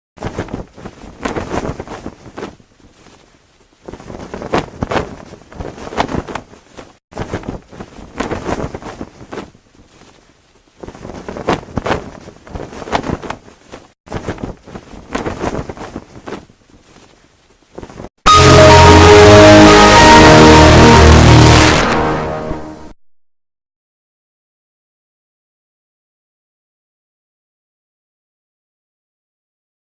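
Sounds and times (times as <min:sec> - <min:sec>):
cloth flag flapping: 0:00.2 - 0:18.1.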